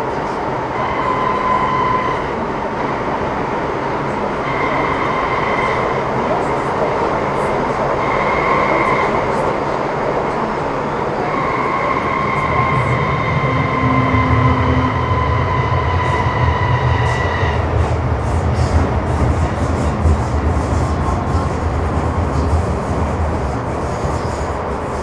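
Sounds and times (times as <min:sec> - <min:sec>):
wheels rumbling on rail: 0:00.0 - 0:25.0
train traction motor whine: 0:11.6 - 0:17.9.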